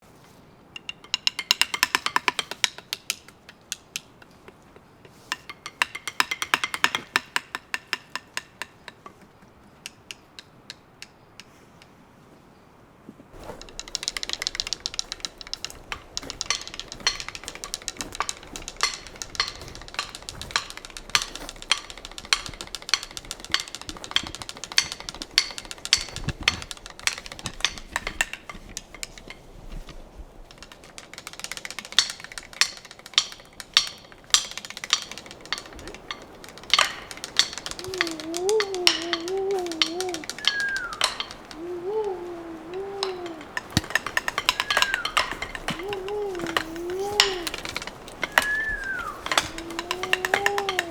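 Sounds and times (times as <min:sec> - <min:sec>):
pecking taps on wood: 0:13.4 - 0:28.3, 0:30.6 - 0:50.9
wavering voice-like tone: 0:37.7 - 0:40.8, 0:41.4 - 0:43.5, 0:45.7 - 0:47.8, 0:48.6 - 0:50.9.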